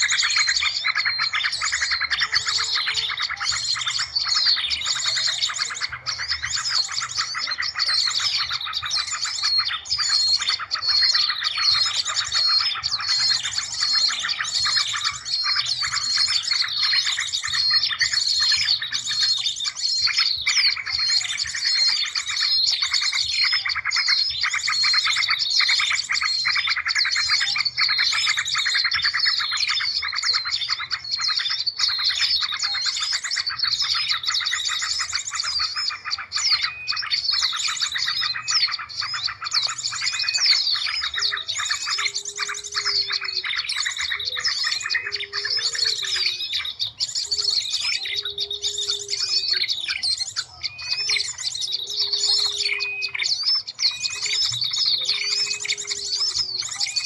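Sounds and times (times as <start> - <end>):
small birds chirping and trilling: 0.0 - 57.0.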